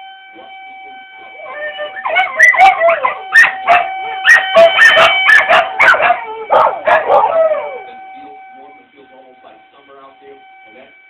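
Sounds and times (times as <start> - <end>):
tornado siren: 0.0 - 11.0
huskies howling and yipping: 1.4 - 7.8.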